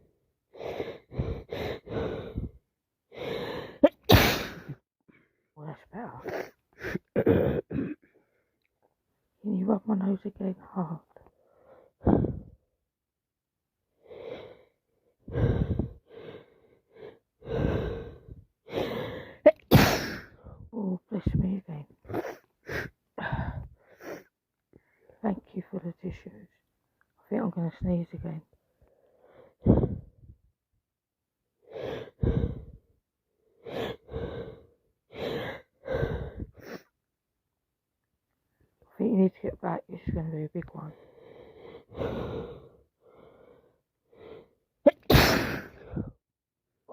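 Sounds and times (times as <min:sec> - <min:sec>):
woman gasping breaths: 0:00.5 - 0:03.8, 0:14.0 - 0:19.4, 0:22.1 - 0:25.1, 0:28.8 - 0:30.3, 0:31.7 - 0:32.9, 0:33.6 - 0:36.9, 0:45.6 - 0:46.2
woman sneezing: 0:03.8 - 0:04.8, 0:19.5 - 0:20.3, 0:44.9 - 0:46.0.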